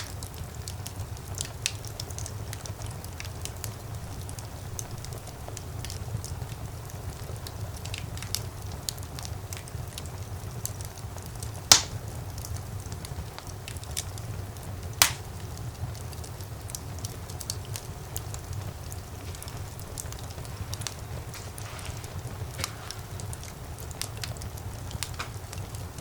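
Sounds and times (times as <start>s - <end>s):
loud sharp pops: 0.0s - 0.2s, 11.7s - 12.0s, 15.0s - 15.2s
low rumble of flames: 0.0s - 26.0s
wood fire crackling: 0.0s - 26.0s.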